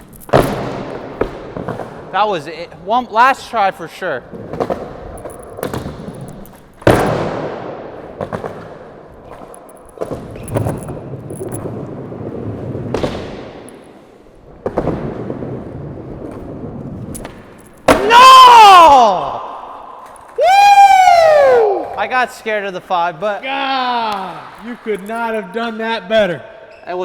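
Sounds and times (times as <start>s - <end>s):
skateboard wheels rolling: 0.3s - 2.1s, 6.8s - 18.6s
person shouting: 18.0s - 19.5s, 20.4s - 22.0s, 23.5s - 24.5s.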